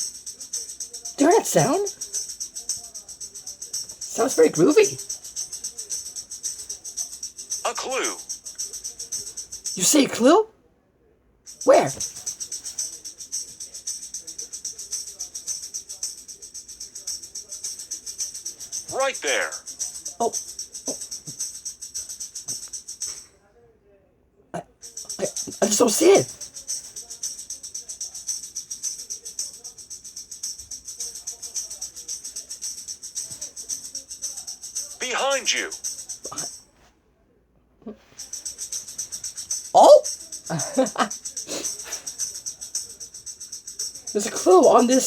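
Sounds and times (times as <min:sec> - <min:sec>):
rhythmic rattling: 0:00.0 - 0:10.5, 0:11.5 - 0:23.4, 0:24.6 - 0:36.8, 0:37.9 - 0:45.0.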